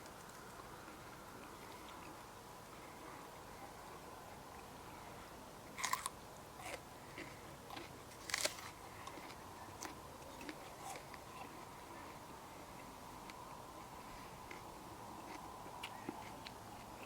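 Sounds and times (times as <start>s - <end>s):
crunchy chewing: 0.0s - 4.7s, 5.7s - 17.0s
crunching bites of vegetables: 5.8s - 11.6s.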